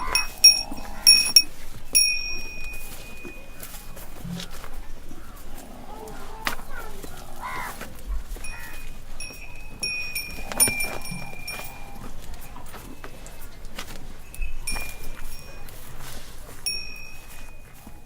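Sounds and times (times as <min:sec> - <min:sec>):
small temple bell ringing: 0:00.0 - 0:04.2, 0:08.3 - 0:13.2, 0:14.3 - 0:18.0.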